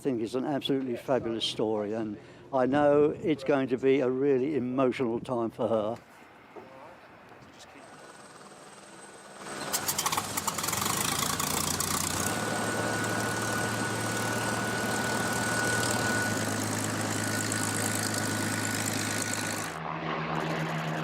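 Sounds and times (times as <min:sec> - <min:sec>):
aircraft engine running: 0:07.1 - 0:21.0.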